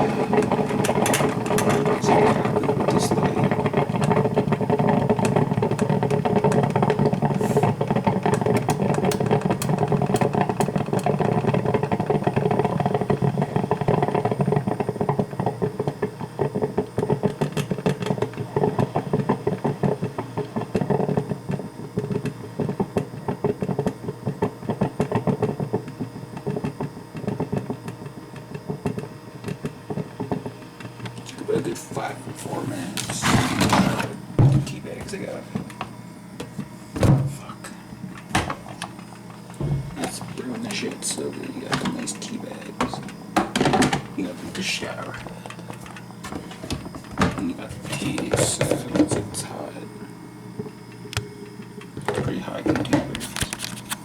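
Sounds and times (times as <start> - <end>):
coffee maker gurgling: 0.0 - 54.0.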